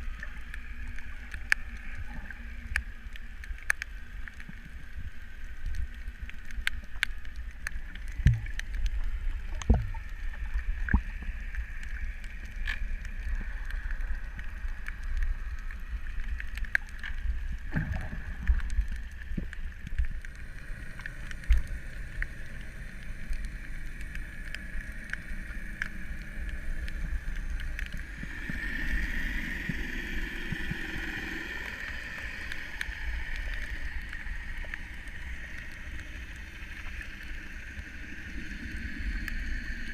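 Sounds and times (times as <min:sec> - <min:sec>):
clicks and crackles: 0:00.0 - 0:39.9
low underwater rumble: 0:00.0 - 0:39.9
steady high hum: 0:00.0 - 0:39.9.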